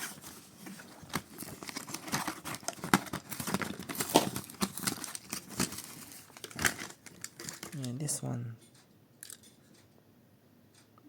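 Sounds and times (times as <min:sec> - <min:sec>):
plastic packaging crinkling: 0:00.0 - 0:08.0.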